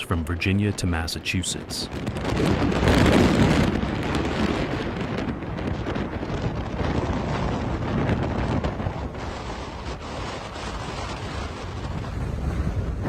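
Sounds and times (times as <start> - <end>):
wind blowing across microphone: 0.0 - 13.0.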